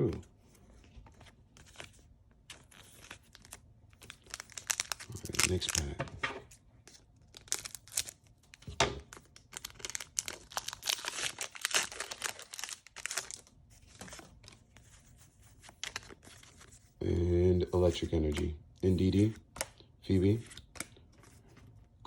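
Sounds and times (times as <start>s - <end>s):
wrapper tearing and crinkling: 2.6s - 6.0s, 7.3s - 14.2s.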